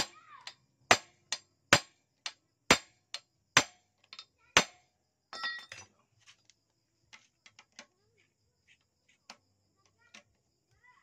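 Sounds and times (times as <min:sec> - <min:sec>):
sharp metal knocks: 0:00.0 - 0:05.9
ringing metallic clink: 0:05.3 - 0:05.9.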